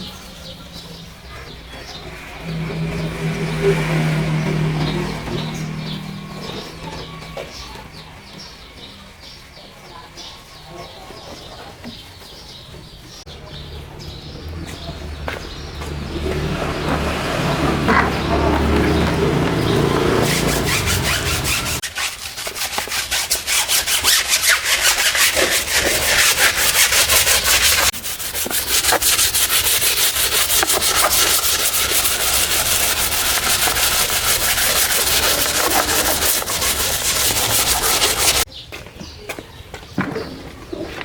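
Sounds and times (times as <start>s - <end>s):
stiff brush scrubbing: 1.5s - 7.3s, 14.8s - 38.5s.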